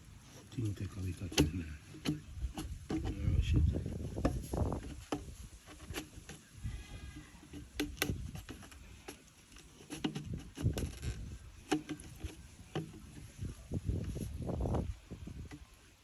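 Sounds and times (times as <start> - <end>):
handling rumble: 0.0 - 15.6
tools knocking and tapping: 1.3 - 3.2.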